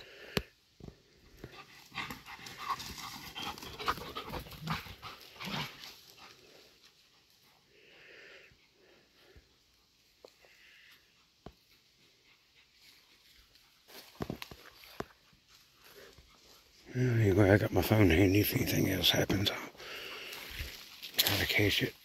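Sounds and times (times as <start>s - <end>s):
animal panting: 1.3s - 13.9s.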